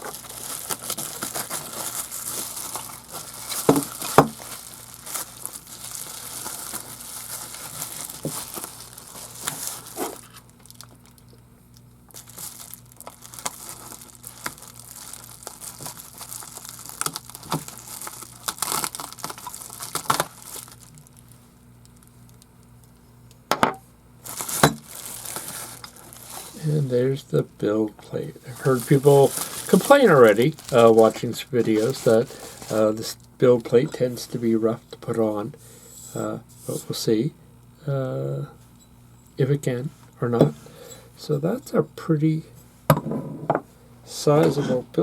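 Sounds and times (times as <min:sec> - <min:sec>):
packaging crinkling and tearing: 0:00.0 - 0:11.4, 0:12.1 - 0:23.0, 0:24.2 - 0:26.9, 0:28.4 - 0:34.4.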